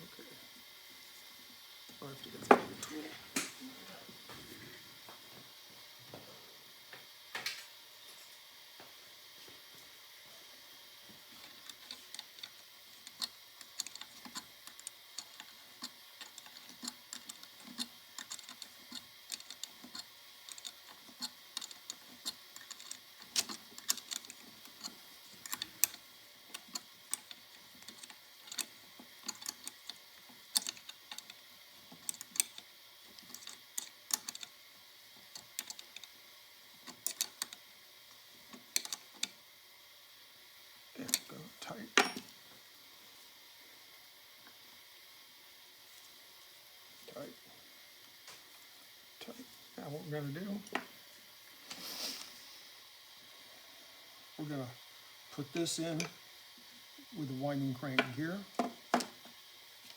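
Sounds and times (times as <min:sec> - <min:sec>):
hand tool clicking on metal: 0:11.4 - 0:31.3, 0:31.9 - 0:32.6, 0:36.9 - 0:37.6.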